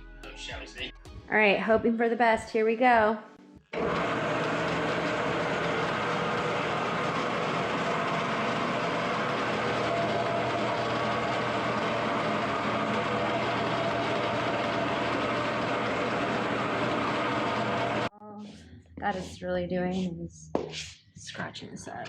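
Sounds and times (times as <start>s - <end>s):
concrete grinder grinding: 3.8s - 18.6s.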